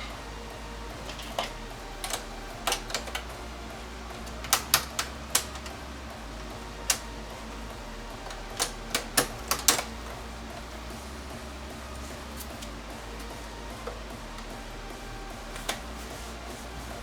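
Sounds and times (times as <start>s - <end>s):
small tools clicking and tapping: 0.9s - 10.3s.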